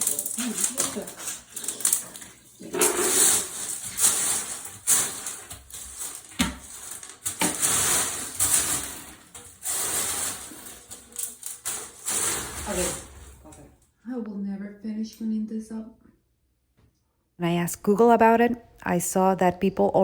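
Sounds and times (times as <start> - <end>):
broom sweeping glass: 0.0 - 13.6
glass fragments clicking and rattling: 0.0 - 13.7.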